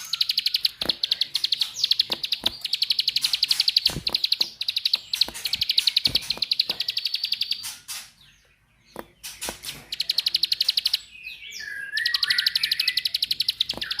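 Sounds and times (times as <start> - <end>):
bird clicking trill: 0.0 - 8.1, 9.0 - 11.0, 11.9 - 14.0
bird chirps sweeping: 0.0 - 14.0.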